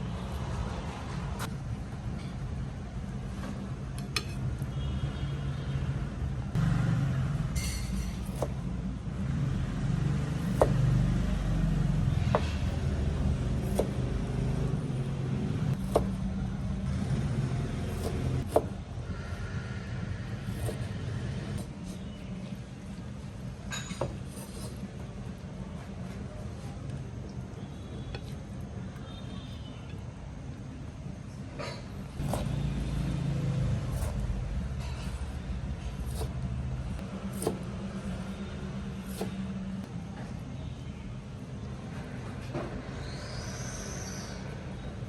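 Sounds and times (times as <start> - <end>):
low mechanical rumble: 31.3 - 41.8.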